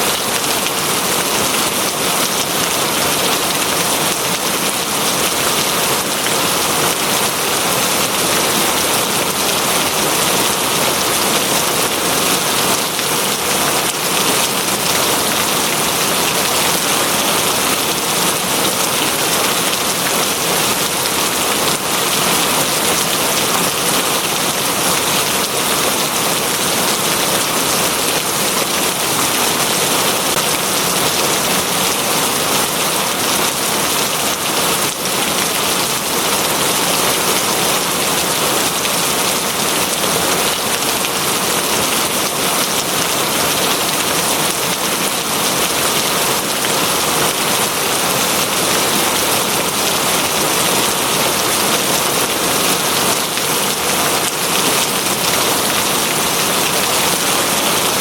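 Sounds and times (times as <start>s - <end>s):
steady rain pattering: 0.0s - 58.0s.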